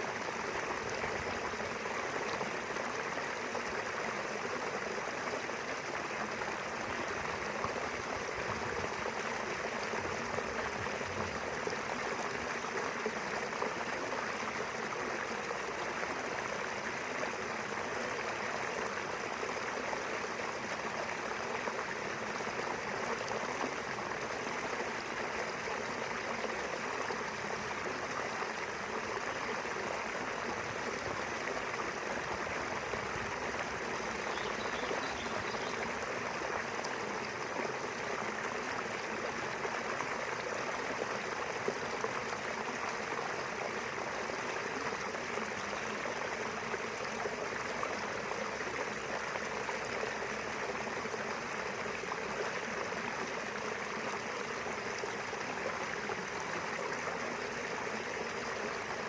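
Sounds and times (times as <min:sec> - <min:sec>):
river water rushing and babbling: 0:00.0 - 0:59.0
faint bird chirp: 0:34.1 - 0:36.0.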